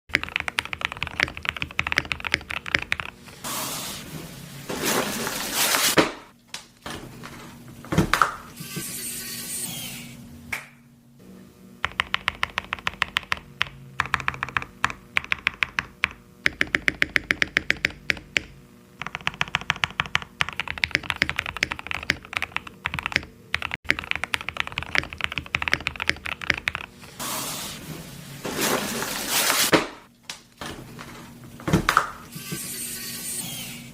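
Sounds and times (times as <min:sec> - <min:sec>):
mechanical keyboard typing clicks: 0:00.1 - 0:03.2, 0:11.8 - 0:26.9.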